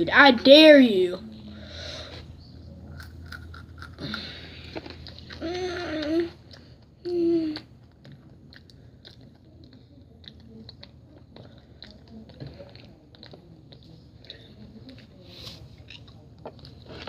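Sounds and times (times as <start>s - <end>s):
person chewing crunchy herbs: 3.0s - 6.8s, 7.8s - 17.0s.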